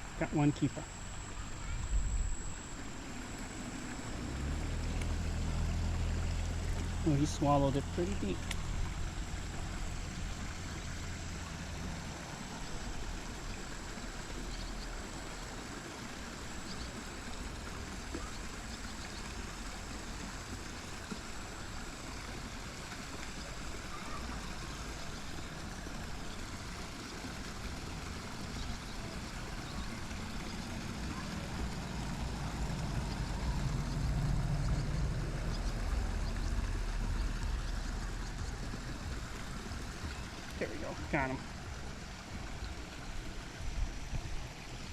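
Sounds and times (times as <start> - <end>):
flowing stream: 0.0 - 44.9
low rumble: 30.8 - 43.0.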